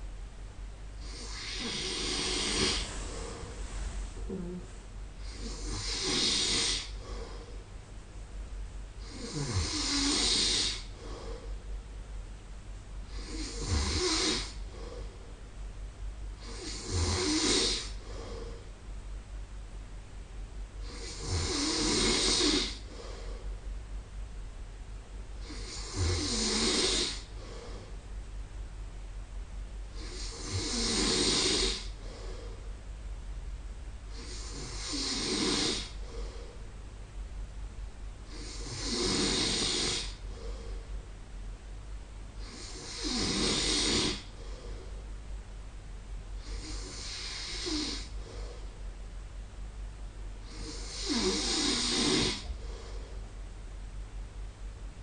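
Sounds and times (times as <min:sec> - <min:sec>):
man snoring: 0:01.0 - 0:03.5, 0:05.2 - 0:07.3, 0:09.0 - 0:11.3, 0:13.1 - 0:15.0, 0:16.4 - 0:18.5, 0:20.8 - 0:23.0, 0:25.4 - 0:27.9, 0:30.0 - 0:32.3, 0:34.1 - 0:36.2, 0:38.3 - 0:40.5, 0:42.4 - 0:44.4, 0:46.4 - 0:48.5, 0:50.4 - 0:52.6
quiet breathing: 0:01.0 - 0:07.9, 0:09.0 - 0:11.8, 0:13.0 - 0:15.6, 0:16.3 - 0:18.9, 0:20.8 - 0:23.8, 0:25.3 - 0:28.2, 0:29.9 - 0:32.9, 0:34.0 - 0:36.8, 0:38.2 - 0:41.2, 0:42.3 - 0:45.3, 0:46.3 - 0:49.0, 0:50.4 - 0:53.4.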